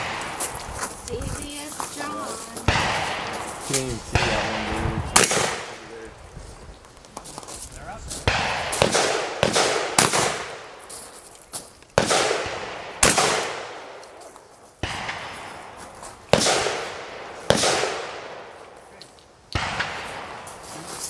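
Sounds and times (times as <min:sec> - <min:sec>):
gunshots with echoing decay: 0:00.0 - 0:00.5, 0:02.6 - 0:06.0, 0:08.2 - 0:10.9, 0:12.0 - 0:14.2, 0:14.8 - 0:18.9, 0:19.5 - 0:20.7.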